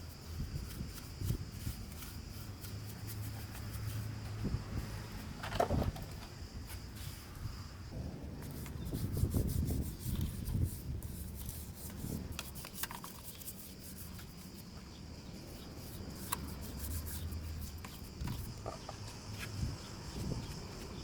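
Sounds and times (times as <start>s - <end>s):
hand scrubbing metal parts: 8.4s - 19.5s.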